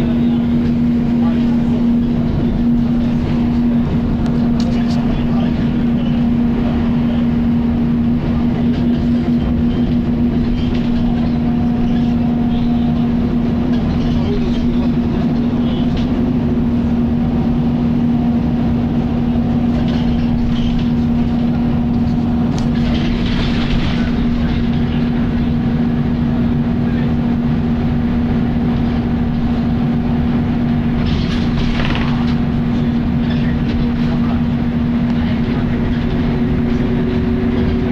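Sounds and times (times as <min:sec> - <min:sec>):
bus cooling fan drone: 0:00.0 - 0:37.9.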